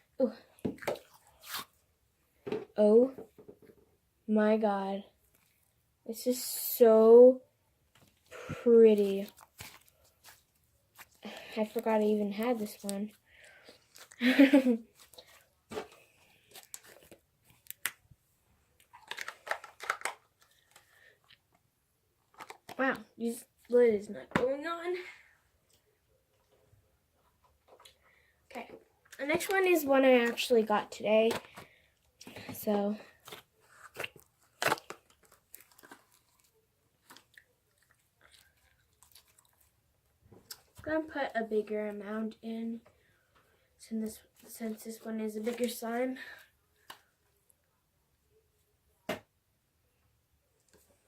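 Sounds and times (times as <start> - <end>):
slime crackling and tearing: 33.2 - 36.4.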